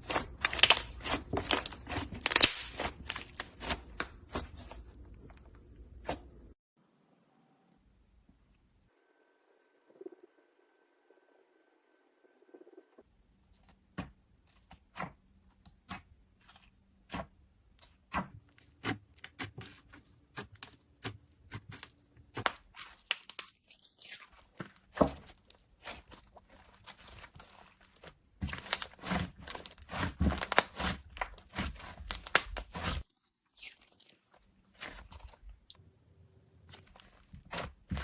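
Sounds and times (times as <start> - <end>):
slime crackling when kneaded: 0.0 - 4.8, 21.8 - 35.7.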